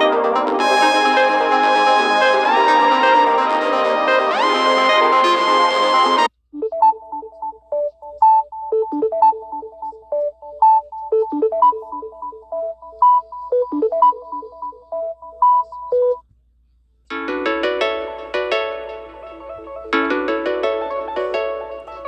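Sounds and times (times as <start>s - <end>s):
electronic ringtone melody: 0.0s - 15.3s.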